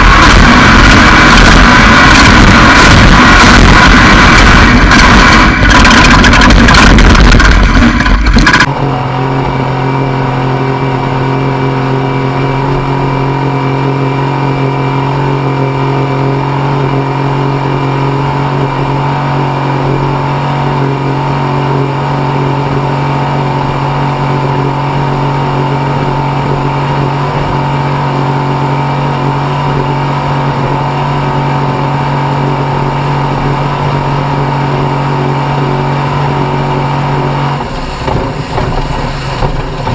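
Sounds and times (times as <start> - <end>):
harsh loud sound cutting off: 0.0 - 9.4
race vehicle engine running: 0.0 - 39.9.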